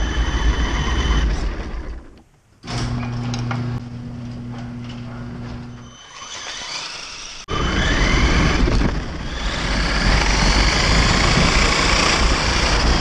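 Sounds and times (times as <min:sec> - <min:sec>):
motor whine rising: 0:02.7 - 0:13.0.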